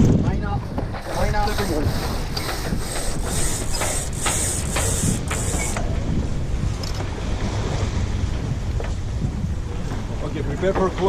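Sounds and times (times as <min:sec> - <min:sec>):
water washing past hull: 0:00.0 - 0:11.0
wind: 0:00.0 - 0:11.0
rope rasping through blocks: 0:00.7 - 0:06.0.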